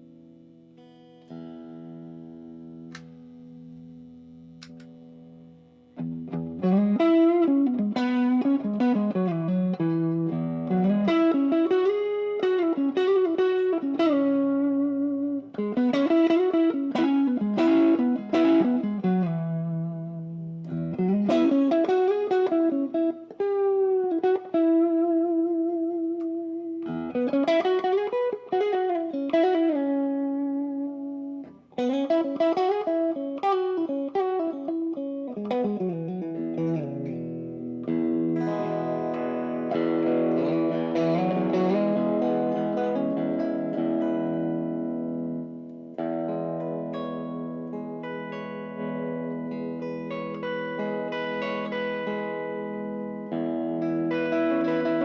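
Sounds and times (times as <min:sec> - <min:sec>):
electric guitar lead melody: 0:00.0 - 0:55.0.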